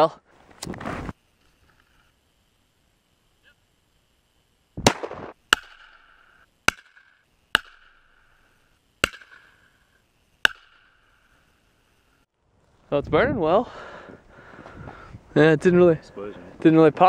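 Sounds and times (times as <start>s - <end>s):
rifle shots: 4.8s - 8.1s.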